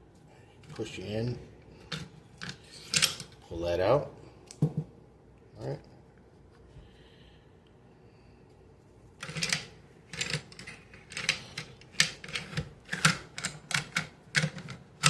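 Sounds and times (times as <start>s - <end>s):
pistol parts scraping rattle: 1.8s - 3.4s, 9.2s - 15.0s.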